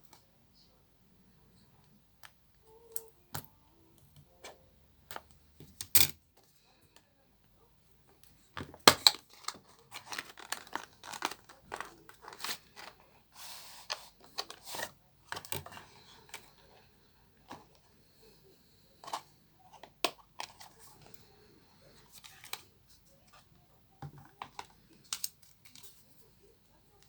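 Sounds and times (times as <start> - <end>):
packaging clicks and knocks: 8.6 - 13.0
packaging crinkling and tearing: 8.9 - 13.0.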